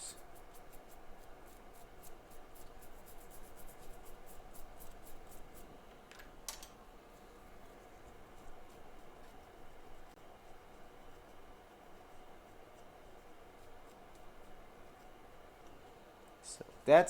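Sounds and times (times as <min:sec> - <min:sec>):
small tool scratching circuit board: 0:00.0 - 0:05.7, 0:08.1 - 0:15.9.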